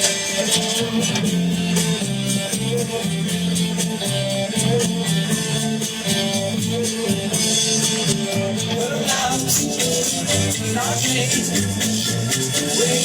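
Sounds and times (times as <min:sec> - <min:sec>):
guitar rock song: 0:00.0 - 0:13.0.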